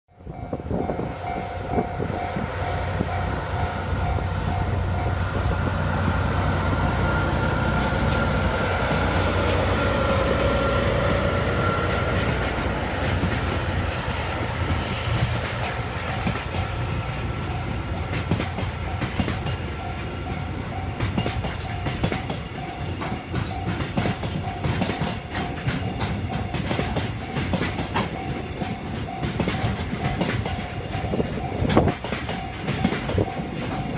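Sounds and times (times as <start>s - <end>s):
locomotive engine rumble: 0.3s - 33.9s
freight wagons clattering over rails: 14.4s - 33.9s.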